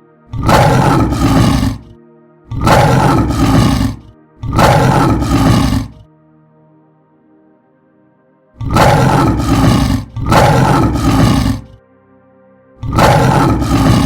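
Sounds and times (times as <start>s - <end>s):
soft background music: 0.0s - 14.0s
large animal roaring: 0.3s - 1.9s, 2.5s - 6.0s, 8.6s - 11.8s, 12.8s - 14.0s.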